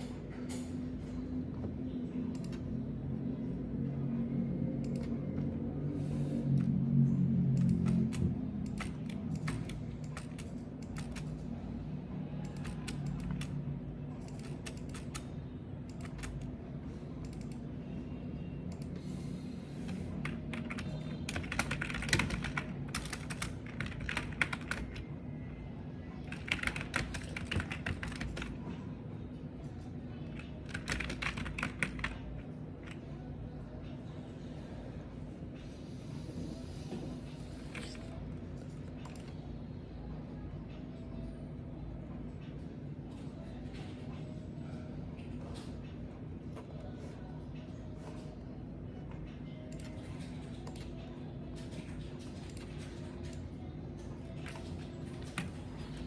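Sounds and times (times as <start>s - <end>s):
low background hum: 0.0s - 56.0s
typing on computer keyboard: 7.5s - 11.6s, 12.4s - 16.5s, 17.2s - 17.6s, 19.8s - 25.1s, 26.2s - 28.8s, 30.3s - 33.0s, 49.7s - 56.0s.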